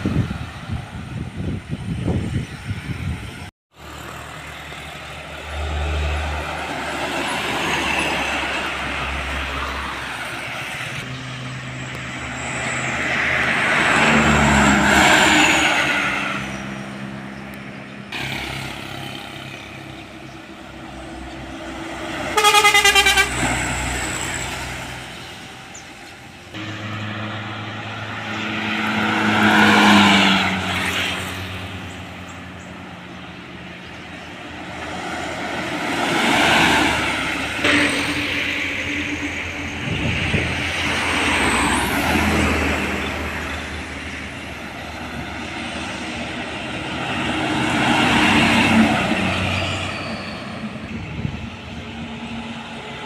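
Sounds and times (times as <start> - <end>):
vehicles driving past: 0.0 - 53.0
vehicle horn: 22.2 - 23.7.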